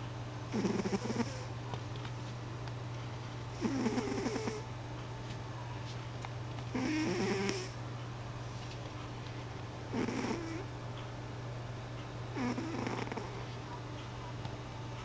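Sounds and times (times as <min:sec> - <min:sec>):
steady low hum: 0:00.0 - 0:15.0
pet snoring: 0:00.5 - 0:01.5, 0:03.5 - 0:04.6, 0:06.7 - 0:07.8, 0:09.9 - 0:10.7, 0:12.3 - 0:13.5.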